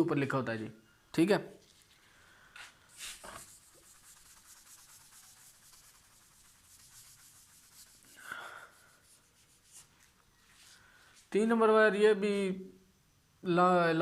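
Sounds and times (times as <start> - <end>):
pen writing on paper: 3.1 - 8.1.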